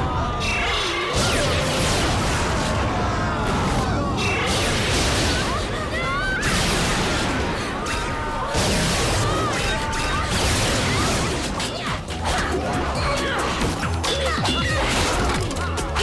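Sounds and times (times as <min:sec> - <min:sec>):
action music: 0:08.6 - 0:16.0.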